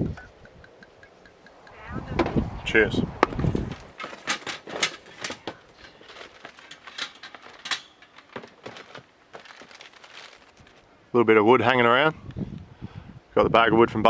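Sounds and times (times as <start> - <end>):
clicks and knocks of handling: 3.9 - 10.8.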